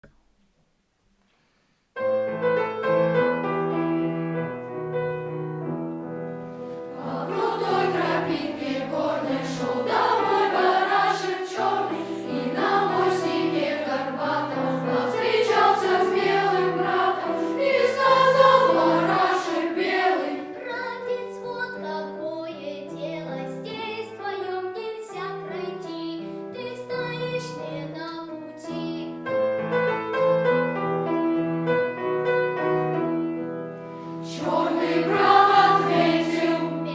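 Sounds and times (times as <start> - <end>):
piano accompaniment: 2.0 - 36.9
boys' choir singing: 6.8 - 20.6, 34.2 - 36.9.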